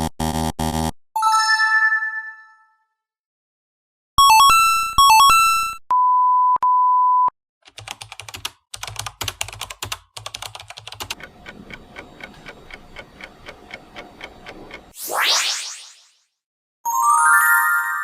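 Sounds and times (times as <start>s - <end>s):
censor beeps: 5.9s - 7.3s
keyboard typing: 7.6s - 15.0s.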